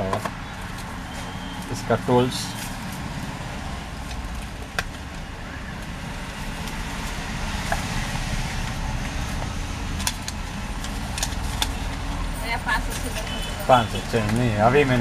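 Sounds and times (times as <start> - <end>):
low rumble of background noise: 0.0 - 15.0
packaging clicks and taps: 8.7 - 12.1.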